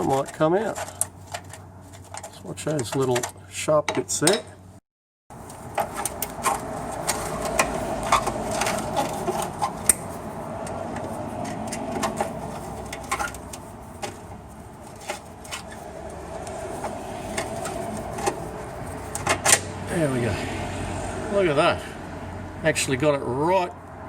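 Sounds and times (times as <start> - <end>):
sharp metallic clicks and rattles: 0.0 - 3.4, 5.3 - 19.8.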